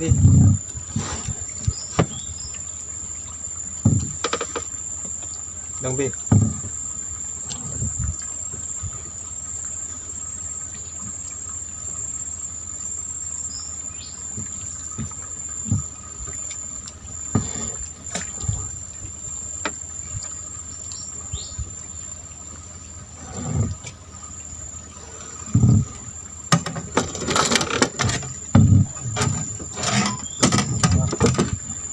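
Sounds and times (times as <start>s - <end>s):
short knocks and thumps: 0.0s - 2.4s, 3.8s - 5.3s, 6.2s - 6.8s, 14.3s - 16.4s, 17.3s - 18.7s, 25.4s - 31.9s.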